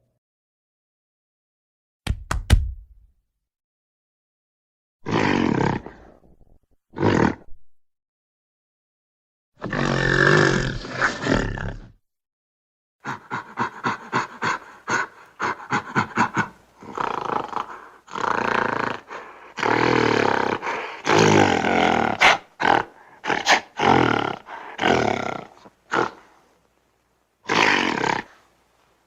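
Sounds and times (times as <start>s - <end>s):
creature roaring: 5.0s - 6.2s, 9.6s - 12.0s, 15.7s - 26.2s.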